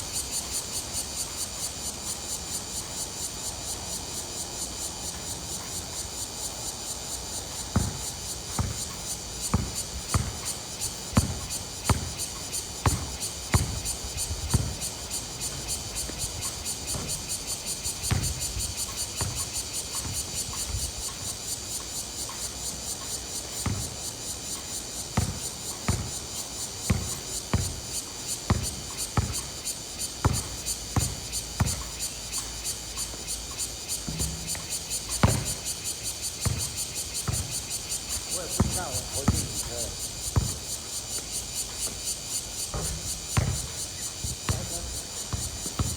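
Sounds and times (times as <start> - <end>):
basketball bouncing on hard court: 7.7 - 10.5, 11.1 - 17.2, 18.0 - 20.6, 23.6 - 23.9, 25.2 - 26.2, 26.8 - 27.8, 28.5 - 29.5, 30.2 - 31.9, 33.6 - 40.7, 42.7 - 45.9.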